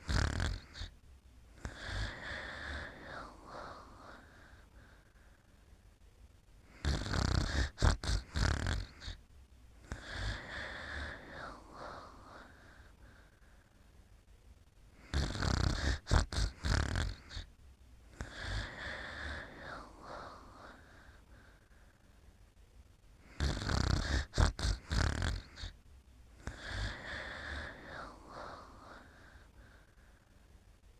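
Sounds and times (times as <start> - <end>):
person snoring: 0.0 - 0.9, 1.6 - 5.0, 6.6 - 9.2, 9.8 - 13.3, 15.0 - 17.5, 18.1 - 21.6, 23.2 - 25.8, 26.4 - 30.0.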